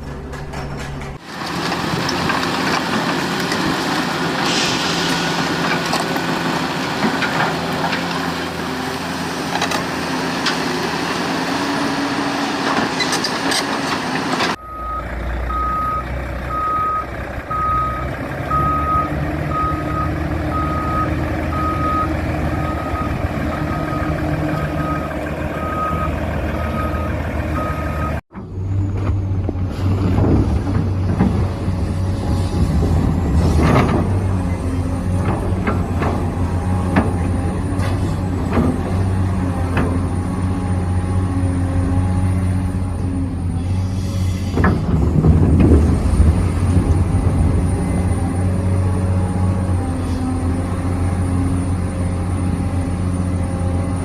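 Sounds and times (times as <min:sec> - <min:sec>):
reversing beeper short beeps: 0:14.6 - 0:24.2.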